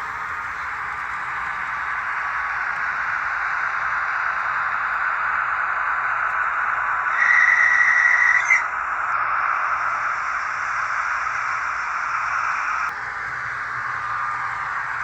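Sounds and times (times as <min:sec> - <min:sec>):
model locomotive hissing: 0:00.0 - 0:05.1, 0:12.9 - 0:15.0.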